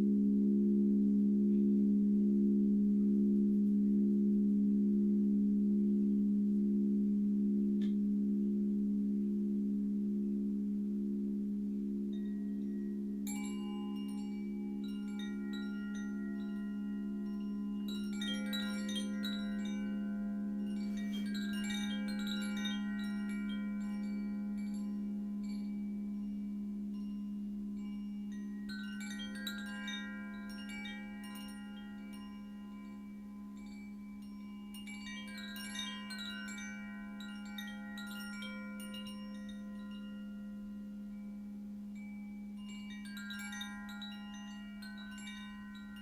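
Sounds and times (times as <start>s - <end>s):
singing bowl ringing: 11.8s - 46.0s
wind chimes tinkling: 12.1s - 46.0s.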